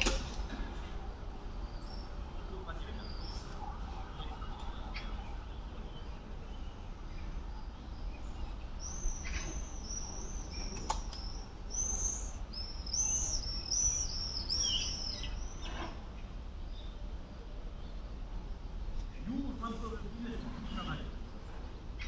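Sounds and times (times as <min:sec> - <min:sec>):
small bird chirping: 0:06.0 - 0:15.8.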